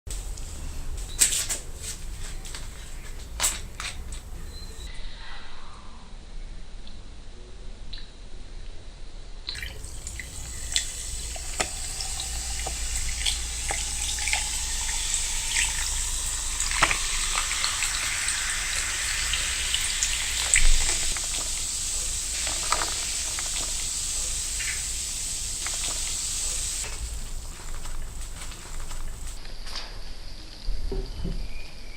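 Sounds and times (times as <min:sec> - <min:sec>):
soda fizzing: 0:00.1 - 0:04.9, 0:09.5 - 0:29.4.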